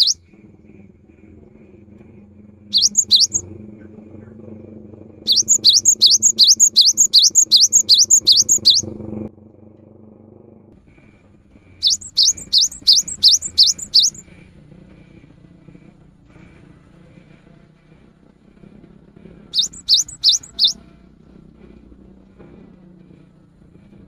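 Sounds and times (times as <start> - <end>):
bird singing rising whistles: 0.0 - 0.2, 2.7 - 3.4, 5.3 - 8.9, 11.8 - 14.2, 19.6 - 20.8.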